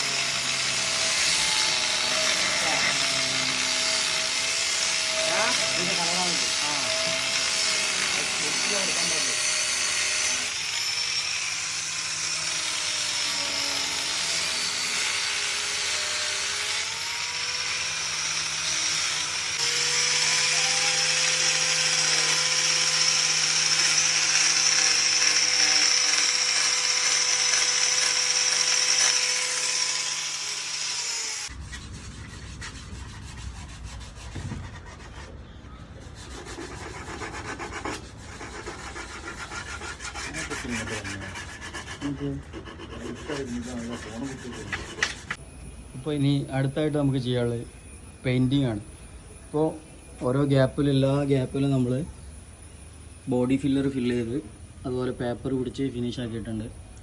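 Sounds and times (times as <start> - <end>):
electric grinder grinding wood: 0.0 - 31.5
sandpaper rubbing on wood: 31.5 - 35.4, 36.0 - 45.4.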